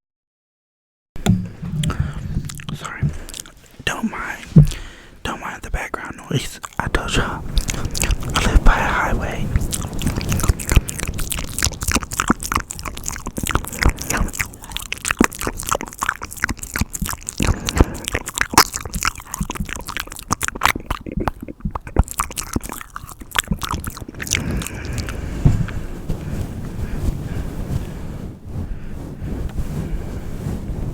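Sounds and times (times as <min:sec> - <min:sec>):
wet mouth clicks and smacks: 0:01.2 - 0:25.8.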